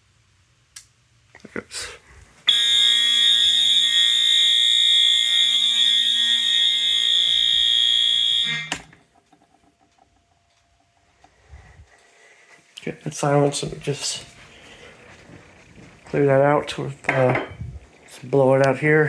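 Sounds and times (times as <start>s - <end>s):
fire alarm horn steady tone: 2.4s - 9.3s, 13.4s - 16.8s.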